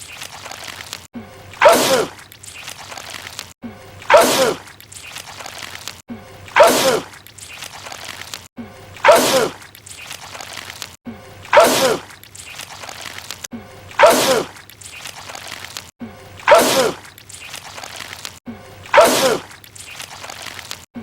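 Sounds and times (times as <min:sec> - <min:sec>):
man sneezing loudly: 0:14.0 - 0:14.5, 0:16.5 - 0:17.0, 0:19.0 - 0:19.5.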